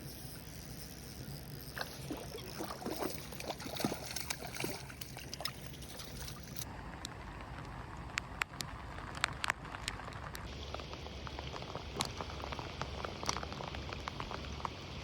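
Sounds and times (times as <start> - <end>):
water splashing and sloshing: 1.5 - 6.7.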